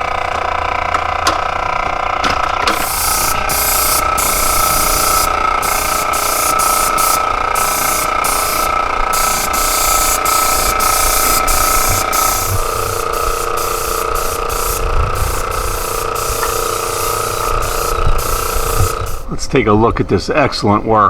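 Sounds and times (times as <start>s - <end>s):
steady high-pitched whine: 2.6s - 20.8s
paint spray gun hissing: 2.7s - 19.4s.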